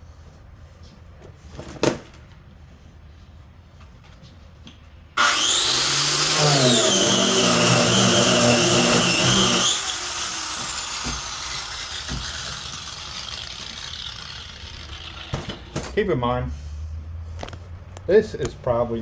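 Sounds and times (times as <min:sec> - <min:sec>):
power sander whining: 0:05.2 - 0:15.8.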